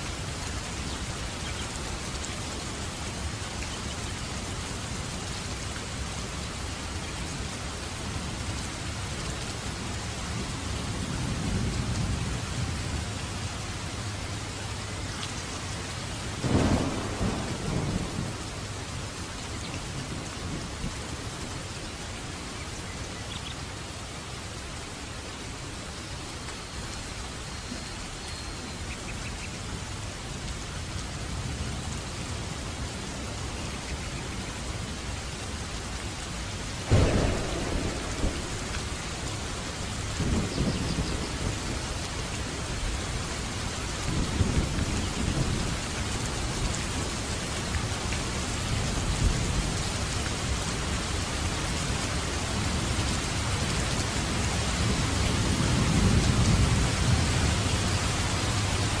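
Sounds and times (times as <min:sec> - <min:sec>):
heavy rain: 0:00.0 - 0:59.0
sharp thunderclap: 0:16.4 - 0:18.6, 0:36.9 - 0:41.9
low rolls of thunder: 0:16.4 - 0:21.2, 0:36.8 - 0:47.2, 0:54.5 - 0:59.0.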